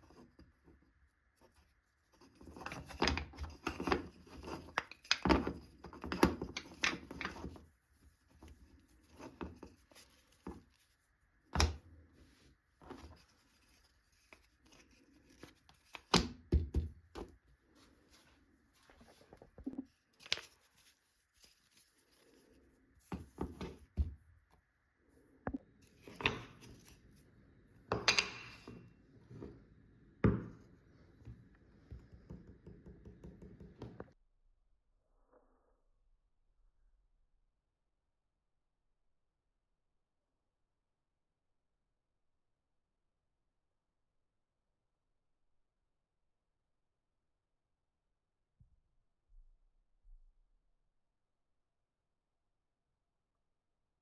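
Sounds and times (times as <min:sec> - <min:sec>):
wooden pieces knocking: 0:27.9 - 0:28.9.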